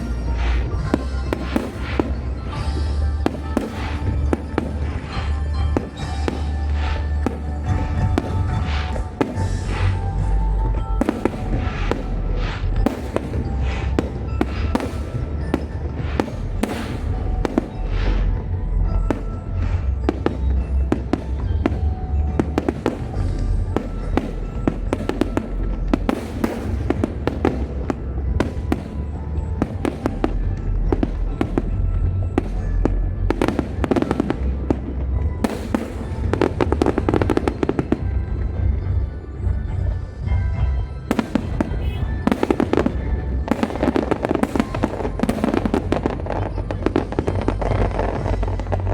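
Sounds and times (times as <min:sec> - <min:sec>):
fireworks bangs and crackles: 0:00.0 - 0:48.9
music playing: 0:00.0 - 0:48.9.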